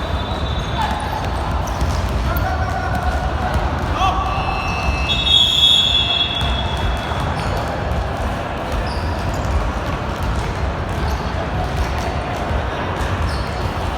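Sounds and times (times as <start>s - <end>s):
referee's whistle blast: 0.0s - 1.2s, 4.2s - 7.5s
sneakers squeaking on court: 0.0s - 12.4s, 13.0s - 13.9s
basketball bouncing: 0.0s - 13.9s.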